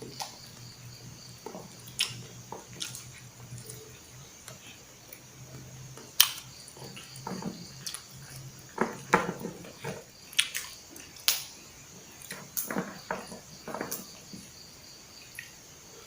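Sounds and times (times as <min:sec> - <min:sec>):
chewing and smacking: 0:00.0 - 0:11.5.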